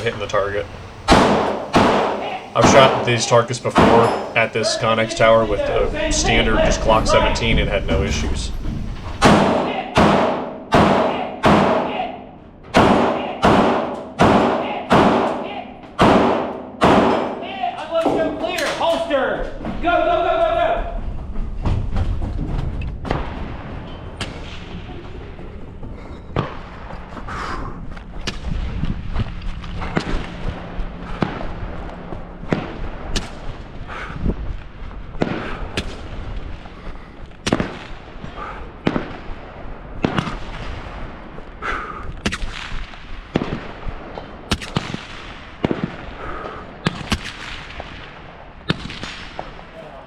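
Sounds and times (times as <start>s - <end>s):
gunshots: 0.0s - 11.9s, 16.0s - 17.4s.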